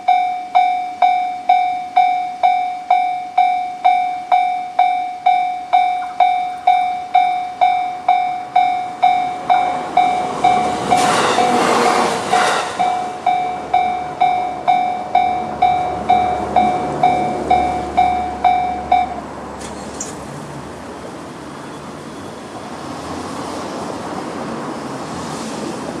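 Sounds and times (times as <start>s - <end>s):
level crossing warning bell: 0.0s - 19.5s
electric train passing: 0.0s - 26.0s
steady outdoor noise: 0.0s - 26.0s
wheels clattering over crossing: 5.8s - 20.3s.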